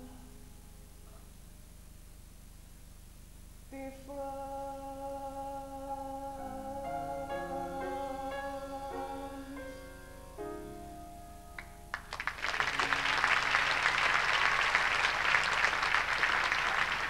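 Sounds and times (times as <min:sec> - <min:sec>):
audience applause: 0:11.9 - 0:17.0.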